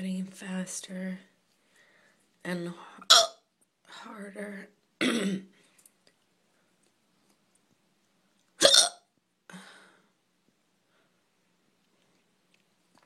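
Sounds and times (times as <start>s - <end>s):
person hiccuping: 3.1s - 3.4s, 5.0s - 5.5s, 8.6s - 9.0s.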